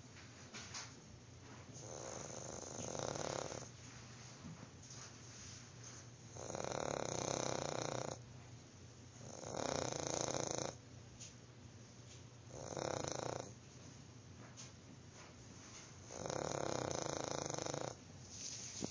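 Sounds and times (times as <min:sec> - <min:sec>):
dog snoring: 0:01.7 - 0:03.8, 0:06.3 - 0:08.2, 0:09.2 - 0:10.8, 0:12.5 - 0:13.6, 0:16.0 - 0:18.0.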